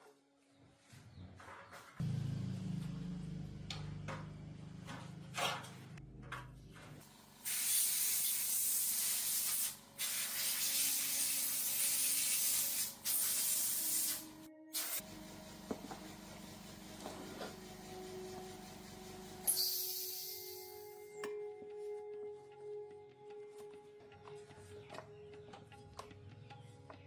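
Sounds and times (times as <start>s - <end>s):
low steady hum: 2.0s - 7.0s
spray hissing: 7.4s - 18.6s.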